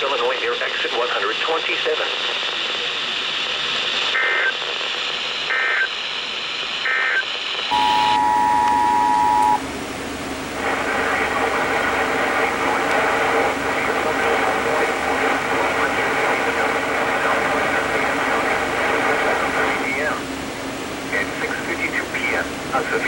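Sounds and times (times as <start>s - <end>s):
radio hiss: 0.0s - 23.0s
screeching data bursts: 7.7s - 9.6s
two-tone attention signal: 7.7s - 9.7s.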